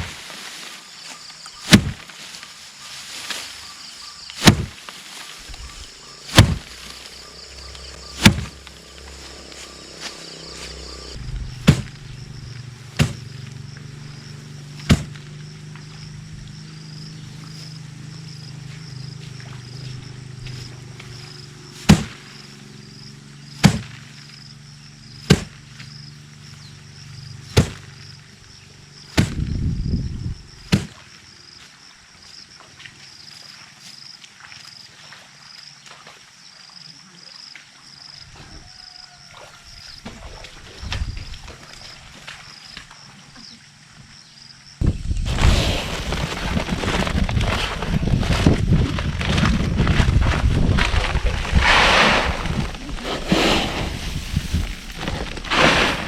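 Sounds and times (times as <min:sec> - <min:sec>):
high insect buzz: 0:00.0 - 0:30.7
sharp single blows: 0:01.6 - 0:02.0, 0:04.4 - 0:04.8, 0:06.3 - 0:06.9, 0:08.1 - 0:08.6, 0:14.8 - 0:15.2, 0:23.6 - 0:24.0
low rumbling noise: 0:06.4 - 0:21.7
low steady hum: 0:06.5 - 0:16.5.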